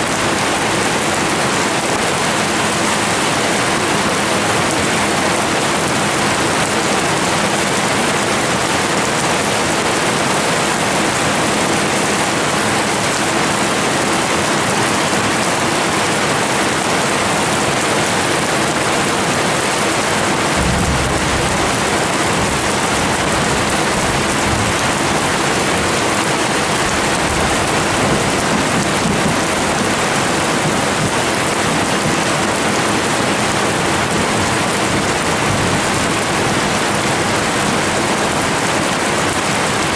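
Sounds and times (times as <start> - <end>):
heavy rain hissing: 20.3 - 32.0
low rumble: 20.6 - 26.0.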